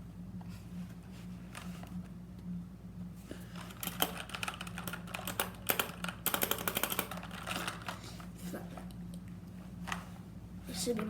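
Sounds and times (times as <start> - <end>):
mechanical keyboard keystrokes: 3.7 - 8.0.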